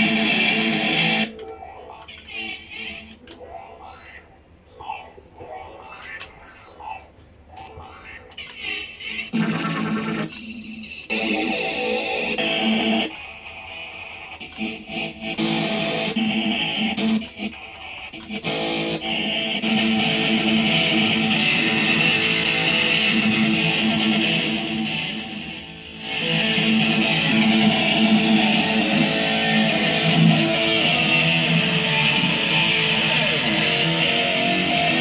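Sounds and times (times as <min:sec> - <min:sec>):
electric guitar strummed chords: 0:14.5 - 0:17.4, 0:18.3 - 0:35.0.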